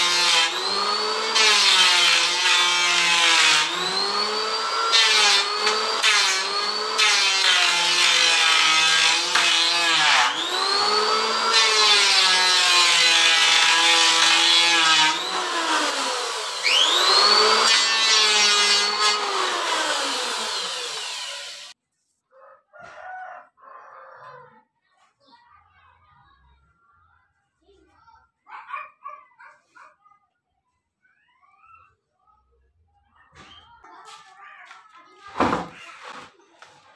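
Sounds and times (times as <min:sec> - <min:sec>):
electric wood planer cutting: 0:00.0 - 0:21.8.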